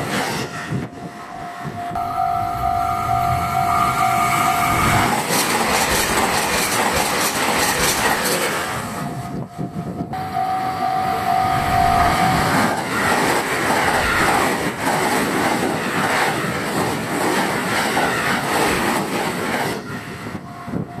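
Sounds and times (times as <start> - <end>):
steady high tone: 0.5 - 6.1, 8.8 - 13.2
train wheels clattering over rail joints: 5.0 - 9.0, 12.5 - 20.4.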